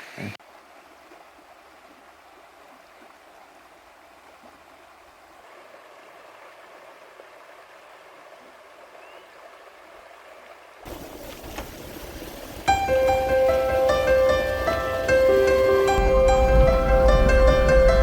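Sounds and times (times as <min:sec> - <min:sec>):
river water flowing: 0:00.0 - 0:18.0.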